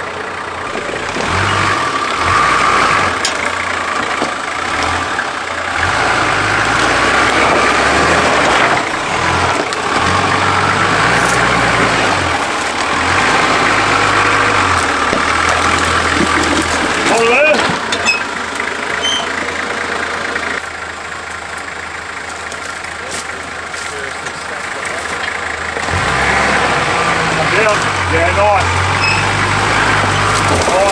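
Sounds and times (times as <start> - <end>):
vehicle engine idling: 0.0 - 30.9
winch running: 0.4 - 30.9
rock dragging: 5.8 - 19.4, 22.2 - 30.9.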